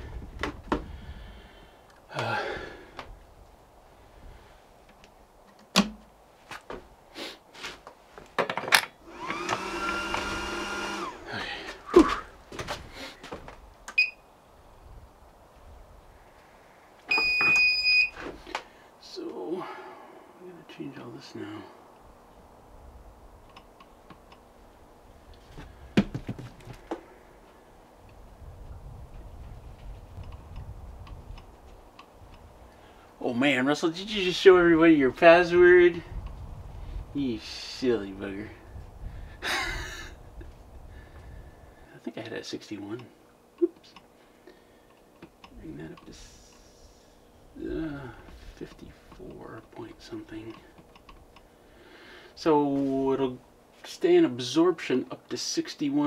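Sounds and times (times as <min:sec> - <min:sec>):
breathy sigh: 0:00.9 - 0:03.1, 0:11.2 - 0:13.2, 0:19.5 - 0:20.4.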